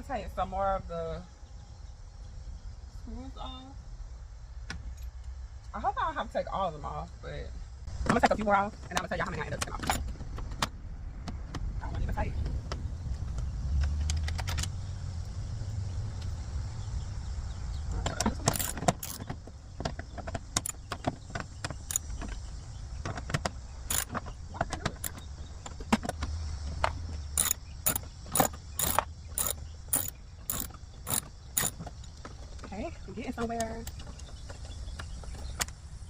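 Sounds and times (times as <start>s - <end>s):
metallic clicks of hand tools: 18.1s - 19.2s, 23.9s - 24.2s, 27.4s - 32.2s.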